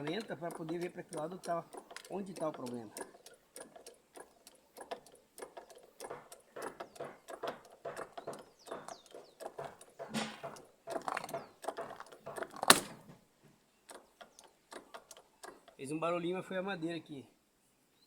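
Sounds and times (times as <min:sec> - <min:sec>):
wooden plank cracking: 0:07.3 - 0:13.2.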